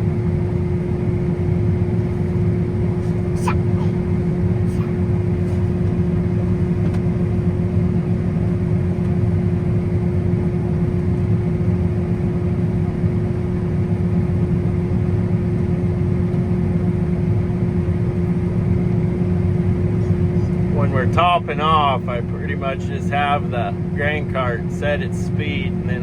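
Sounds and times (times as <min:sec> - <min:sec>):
combine harvester droning: 0:19.8 - 0:26.0.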